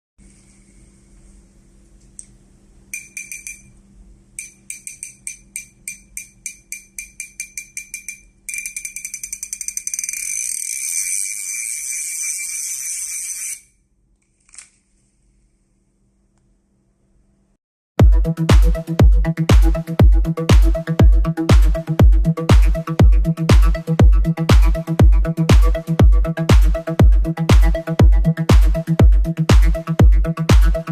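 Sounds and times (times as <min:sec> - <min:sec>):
fishing reel drag clicking: 0:04.4 - 0:14.7.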